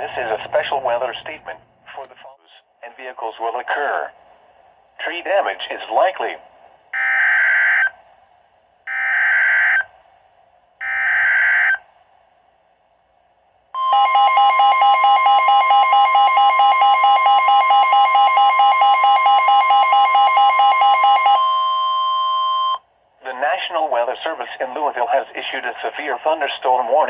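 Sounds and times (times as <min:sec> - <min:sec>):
two-tone alarm with flutter: 0:13.8 - 0:22.2.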